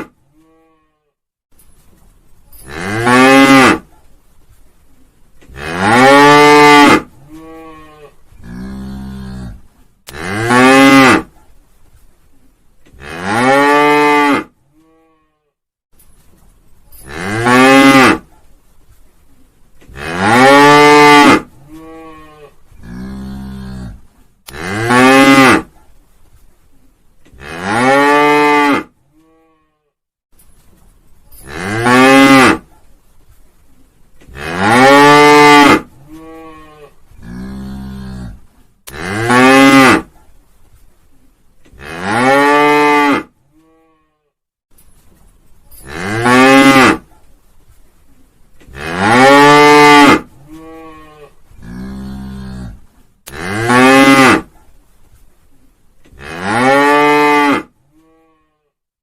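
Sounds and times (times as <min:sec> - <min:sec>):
quieter lower moo: 0:00.0 - 0:01.2, 0:05.5 - 0:11.3, 0:13.0 - 0:15.6, 0:19.9 - 0:25.7, 0:27.3 - 0:30.0, 0:34.3 - 0:40.1, 0:41.8 - 0:44.4, 0:48.7 - 0:54.5, 0:56.1 - 0:58.8.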